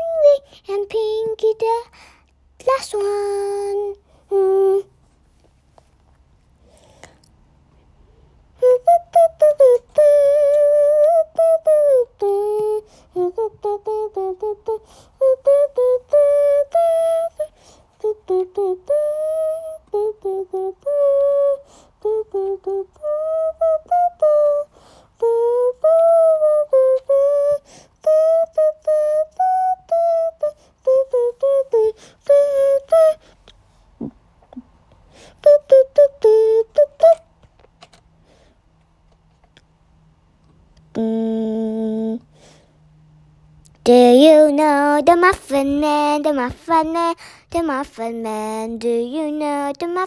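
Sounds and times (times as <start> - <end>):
young child singing: 0.0 - 2.0, 2.6 - 4.9, 8.6 - 33.3, 35.4 - 37.3, 43.8 - 50.0.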